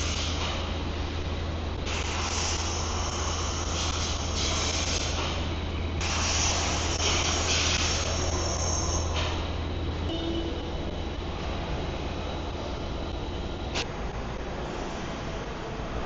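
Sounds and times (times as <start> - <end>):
machine hiss: 1.8 - 9.6.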